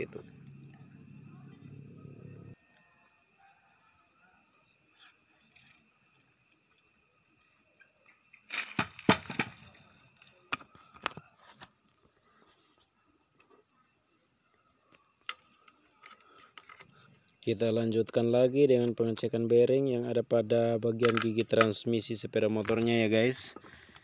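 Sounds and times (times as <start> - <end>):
high-pitched background whine: 0.0 - 3.5.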